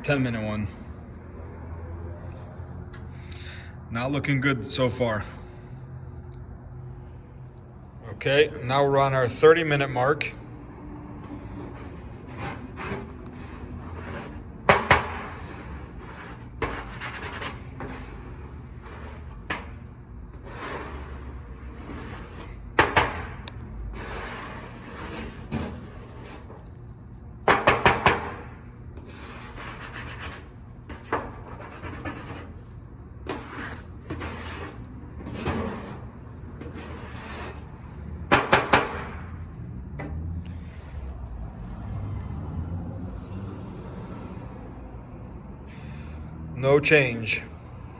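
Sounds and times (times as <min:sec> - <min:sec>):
plastic spreader scraping paint: 0:11.4 - 0:26.8, 0:29.0 - 0:37.9
sharp knocks and clatters: 0:13.8 - 0:18.1, 0:21.8 - 0:23.6, 0:27.4 - 0:28.6, 0:38.3 - 0:39.4.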